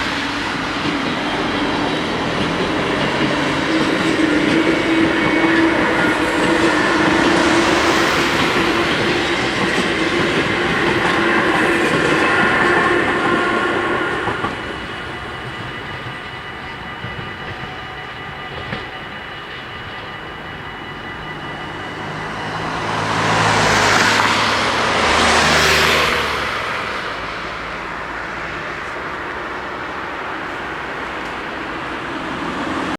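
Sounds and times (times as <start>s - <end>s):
road vehicles driving past: 0.0s - 14.1s, 21.7s - 29.8s
level crossing bells ringing: 0.6s - 26.5s.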